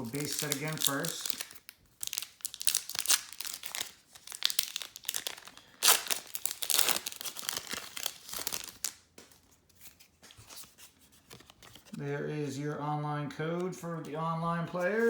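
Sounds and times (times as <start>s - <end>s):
foil wrapper crinkling and tearing: 0.0s - 9.1s.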